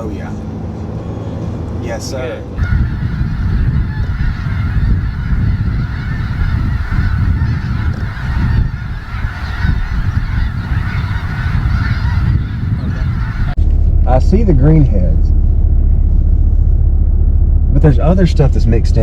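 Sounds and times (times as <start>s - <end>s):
geese honking and yelping: 2.6s - 13.6s
steady low rumble: 2.6s - 19.0s.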